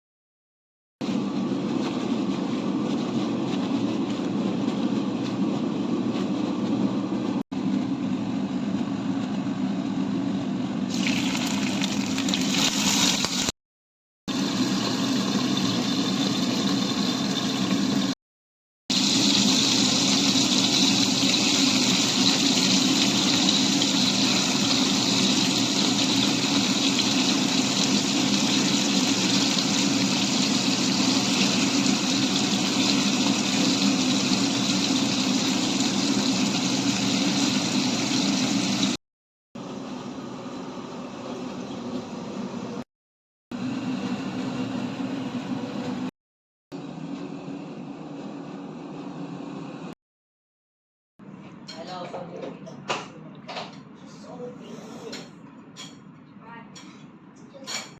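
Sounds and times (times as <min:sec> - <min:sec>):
fish sizzling in hot oil: 0:10.9 - 0:13.5, 0:18.9 - 0:39.0.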